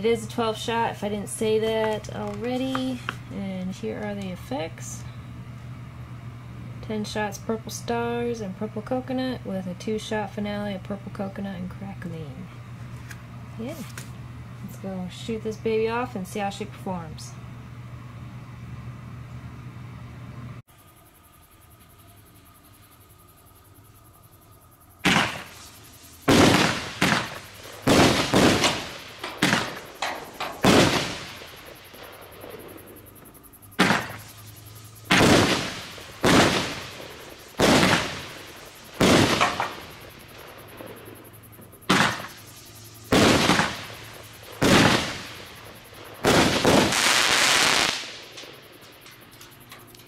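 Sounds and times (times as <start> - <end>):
fireworks dense crackling: 0.0 - 5.6, 24.9 - 50.0
fireworks bangs: 25.0 - 49.6.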